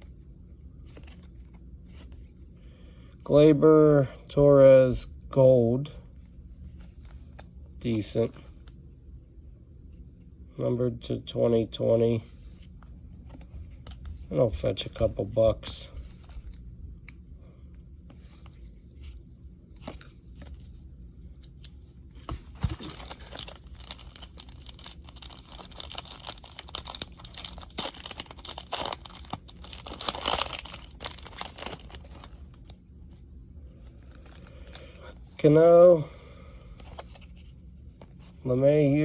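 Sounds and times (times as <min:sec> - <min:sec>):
foil wrapper tearing and crinkling: 0:22.6 - 0:32.7.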